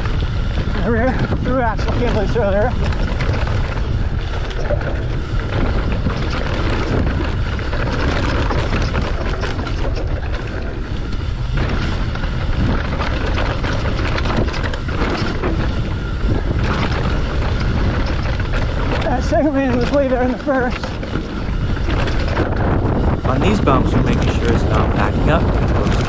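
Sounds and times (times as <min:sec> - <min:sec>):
bike rattling over bumps: 0:00.0 - 0:26.0
bike tyres rolling on dirt: 0:00.0 - 0:26.0
wind rushing over microphone: 0:00.0 - 0:26.0.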